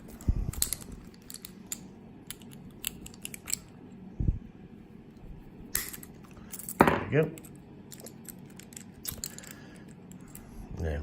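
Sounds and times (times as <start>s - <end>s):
metallic clicks and scrapes: 0.0s - 3.8s.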